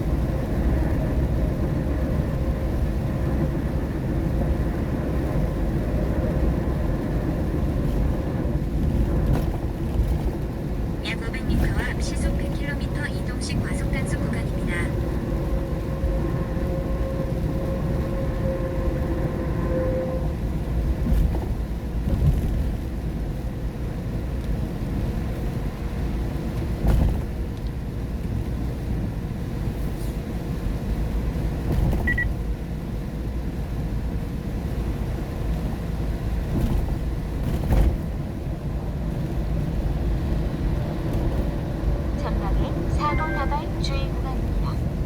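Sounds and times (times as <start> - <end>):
tyres and engine rumble: 0.0 - 45.0
short high beep: 42.7 - 44.7.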